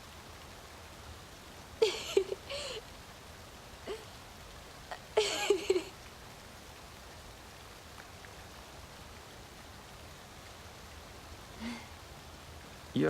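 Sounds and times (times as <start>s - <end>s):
rain hissing: 0.0s - 13.0s
woman sobbing: 1.8s - 2.8s, 4.9s - 5.9s, 11.6s - 11.9s.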